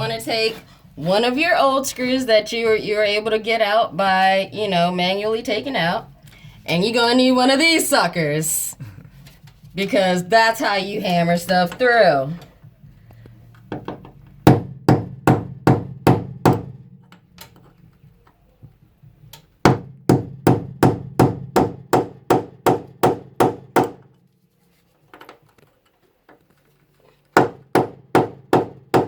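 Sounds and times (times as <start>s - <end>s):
hammer striking metal punch: 14.5s - 17.0s.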